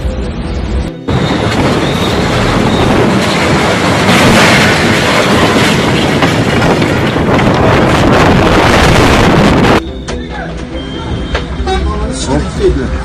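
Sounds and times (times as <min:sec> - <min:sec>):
rattles and knocks: 0:01.1 - 0:09.8
strong wind on microphone: 0:01.1 - 0:09.8.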